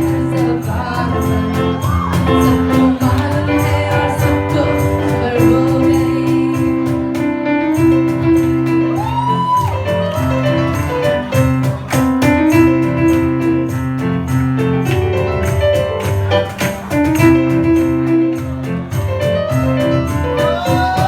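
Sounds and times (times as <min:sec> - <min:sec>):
retro pop music over loudspeakers: 0:00.0 - 0:12.6, 0:19.8 - 0:21.0.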